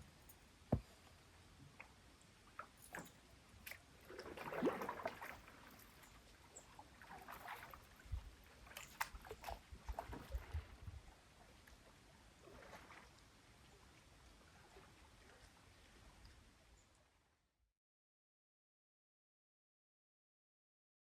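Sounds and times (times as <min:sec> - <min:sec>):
paddle splashing in water: 0:02.6 - 0:10.8.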